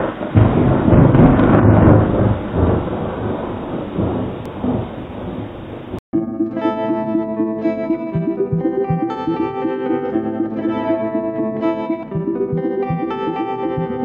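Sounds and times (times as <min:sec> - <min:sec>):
thunder rumbling: 0:00.0 - 0:06.0
plucked-string music: 0:06.2 - 0:14.0.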